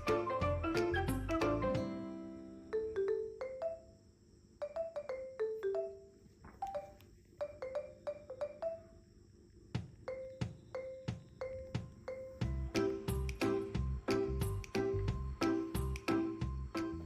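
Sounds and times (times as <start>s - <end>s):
bell-like melody: 10.2s - 17.0s.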